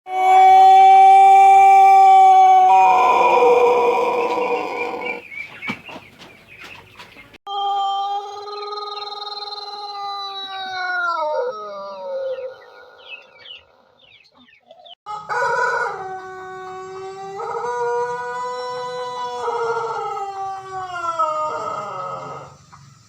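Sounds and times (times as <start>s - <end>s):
rooster crowing: 0.1s - 5.2s, 15.0s - 22.6s.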